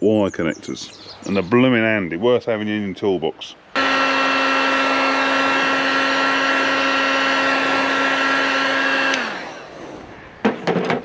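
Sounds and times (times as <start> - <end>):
heat gun fan whining: 3.8 - 11.0
rushing air: 4.7 - 10.5.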